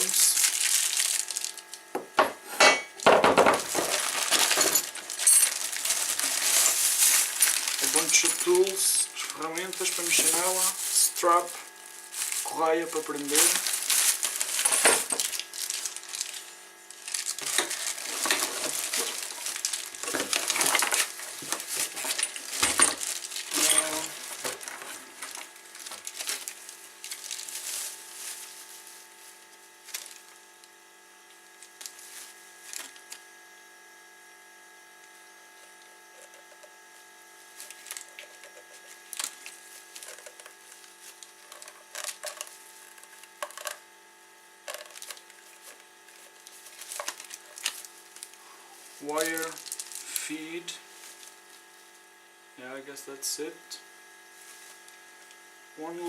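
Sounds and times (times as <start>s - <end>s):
packaging rustling: 0.0s - 1.8s, 3.5s - 30.4s, 37.5s - 43.8s, 44.6s - 51.9s
steady hum: 0.0s - 56.0s
small parts clicking and knocking: 17.0s - 27.2s, 37.6s - 40.6s, 41.4s - 42.5s, 43.4s - 43.8s, 44.6s - 45.8s.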